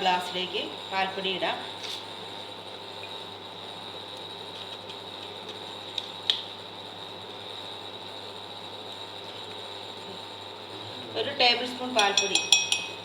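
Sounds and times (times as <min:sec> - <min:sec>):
stove hum and hiss: 0:00.0 - 0:13.0
spoon clinking on glass: 0:12.0 - 0:13.0.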